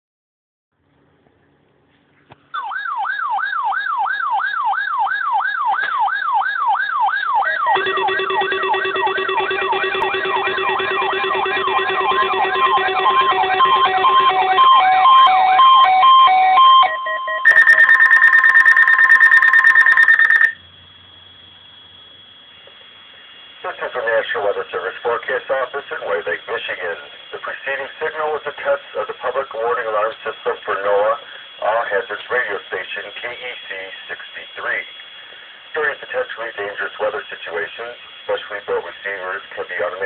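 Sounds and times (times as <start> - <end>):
warbling siren-like sweep: 2.6 - 22.2
loud steady high tone: 3.8 - 40.0
steady low hum: 7.3 - 15.3, 17.5 - 40.0
alternating beeps: 7.3 - 27.4.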